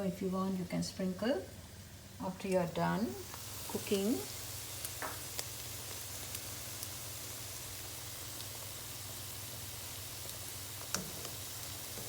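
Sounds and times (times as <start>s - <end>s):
butter sizzling in a frying pan: 1.5s - 12.0s.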